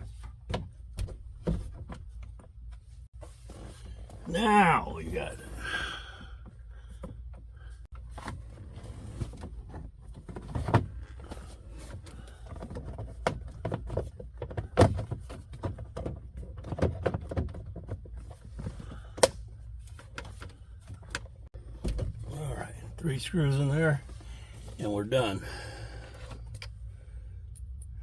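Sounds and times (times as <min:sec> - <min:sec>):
low steady hum: 0:17.6 - 0:28.0.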